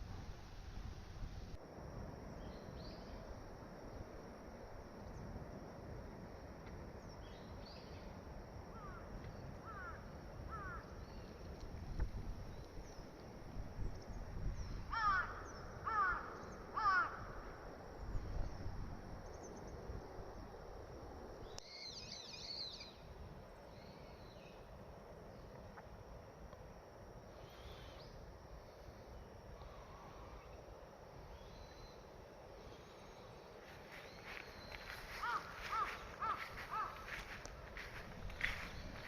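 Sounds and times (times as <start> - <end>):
loud bird calls: 32.7 - 39.0.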